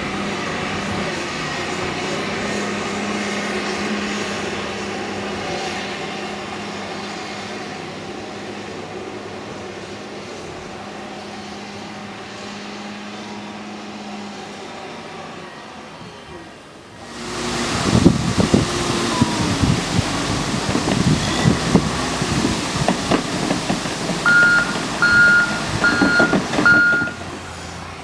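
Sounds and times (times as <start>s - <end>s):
engine humming: 17.0s - 28.0s.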